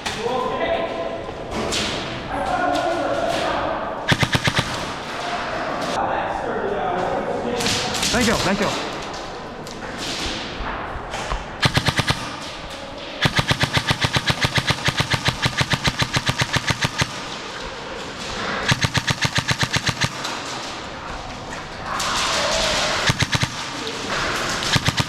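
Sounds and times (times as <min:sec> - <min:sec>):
airsoft gun firing rapidly: 0:04.1 - 0:05.2, 0:11.6 - 0:21.1, 0:22.1 - 0:25.0.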